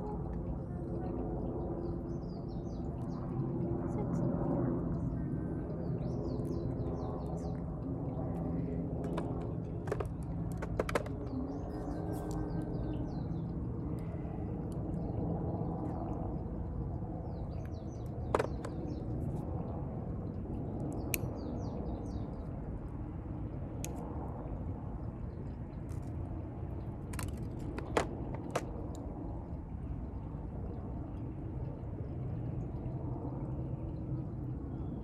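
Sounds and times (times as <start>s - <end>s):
low outdoor rumble: 0.0s - 35.0s
small birds chirping: 17.2s - 19.4s.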